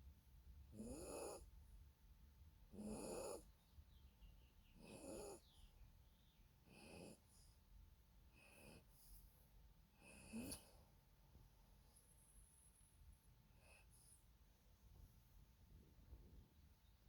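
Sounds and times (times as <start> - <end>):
small dog snoring: 0.7 - 1.5, 2.7 - 3.5, 4.7 - 5.6, 6.6 - 7.6, 8.3 - 9.0, 10.0 - 10.7.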